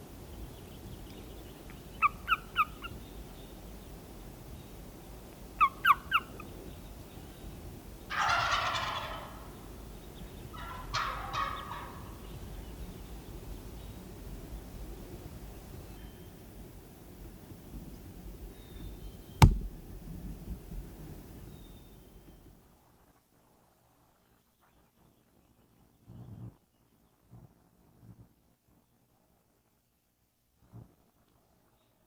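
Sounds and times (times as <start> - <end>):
high yelping turkey call: 2.0 - 2.9, 5.6 - 6.4
turkey gobbling: 8.1 - 9.4, 10.6 - 12.0.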